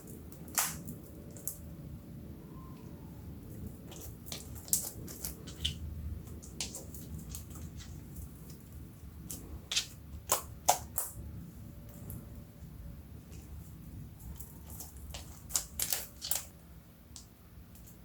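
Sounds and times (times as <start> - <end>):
sticky slime clicks and crackles: 0.0 - 1.6, 3.8 - 8.6, 9.2 - 11.2, 14.2 - 16.5.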